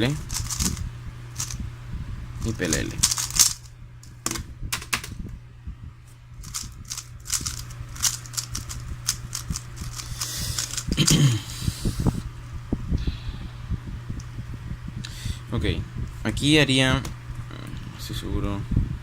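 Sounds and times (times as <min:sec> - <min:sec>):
puzzle cube clicking: 0:06.4 - 0:11.2.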